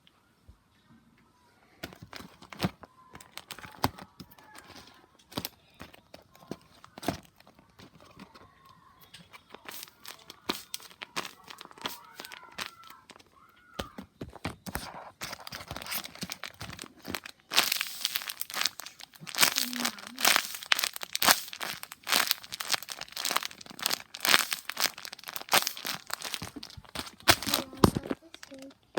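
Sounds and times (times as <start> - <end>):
paper crinkling and crackling: 1.8 - 28.9.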